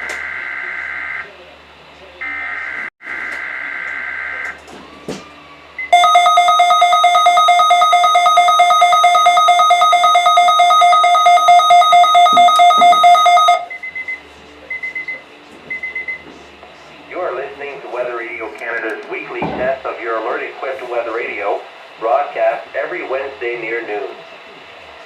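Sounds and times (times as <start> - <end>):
rapidly pulsing alert tone: 5.8 - 14.1
buzzing digital header tones: 5.8 - 15.1.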